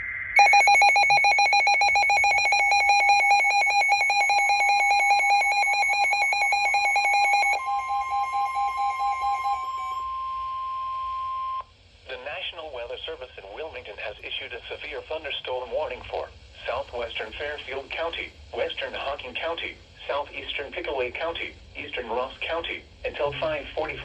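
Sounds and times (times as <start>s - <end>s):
warbling electronic alarm beeping: 0.0s - 11.6s
steady alarm tone: 0.4s - 11.6s.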